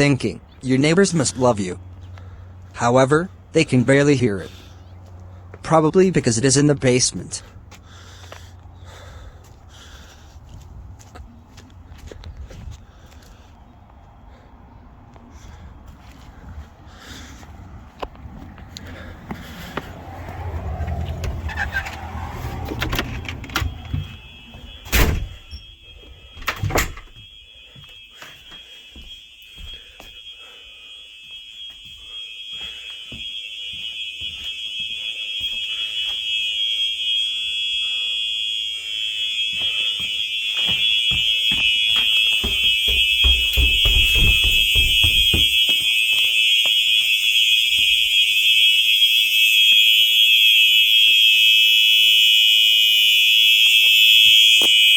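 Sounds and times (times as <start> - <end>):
alarm horn high-pitched tone: 0.0 - 4.8, 19.0 - 54.9
loud thumps: 41.2 - 46.0
short knocks: 42.0 - 45.8.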